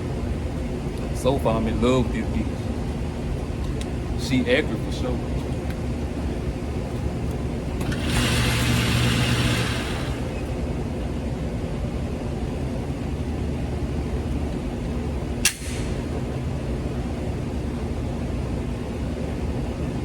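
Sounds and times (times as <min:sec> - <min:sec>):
steady low hum: 0:00.0 - 0:20.0
pistol shot: 0:15.5 - 0:16.0.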